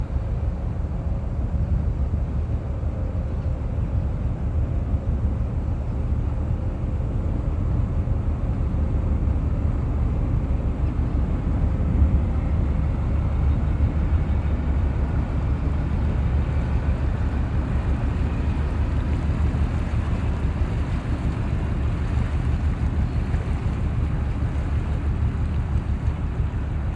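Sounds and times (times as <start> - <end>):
wind buffeting microphone: 7.8 - 26.9.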